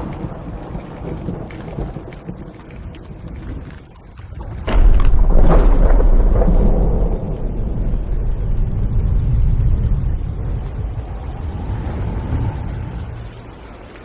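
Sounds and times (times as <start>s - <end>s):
deep bass rumble: 4.5s - 13.6s.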